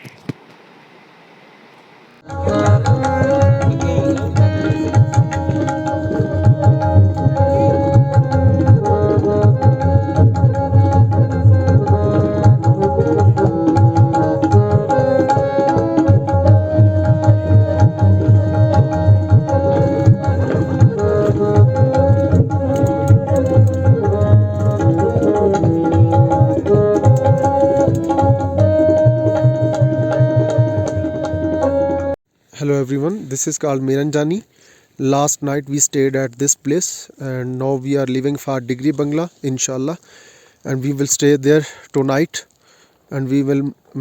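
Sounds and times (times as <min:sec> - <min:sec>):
melody of held notes: 0:02.2 - 0:32.2
hand drum beat: 0:02.3 - 0:32.0.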